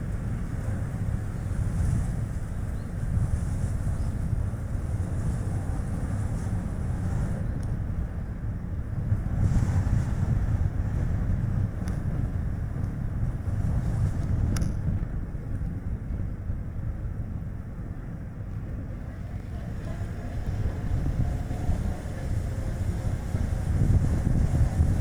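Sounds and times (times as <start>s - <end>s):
wind buffeting microphone: 0.0s - 25.0s
car tyre and road noise: 18.2s - 25.0s.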